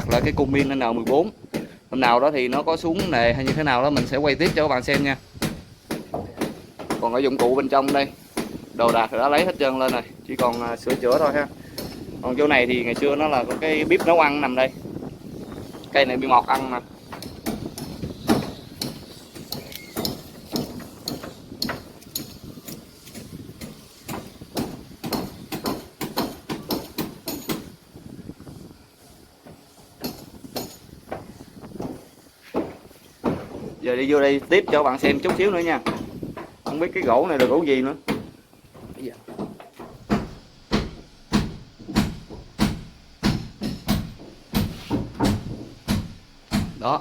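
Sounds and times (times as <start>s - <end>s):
sharp knocks and clunks: 0.0s - 14.6s, 16.4s - 27.8s, 29.4s - 46.9s
footsteps on wooden planks: 16.6s - 27.7s, 29.4s - 46.8s.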